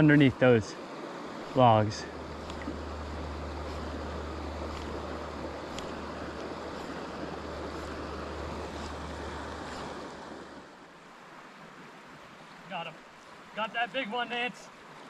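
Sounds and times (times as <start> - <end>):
creek water rushing: 0.0 - 15.0
wind rumble on microphone: 1.2 - 10.8.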